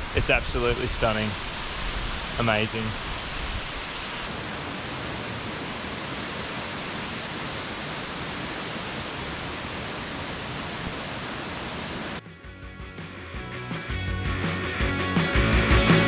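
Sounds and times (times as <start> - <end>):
waterfall crashing into pool: 0.0 - 12.2.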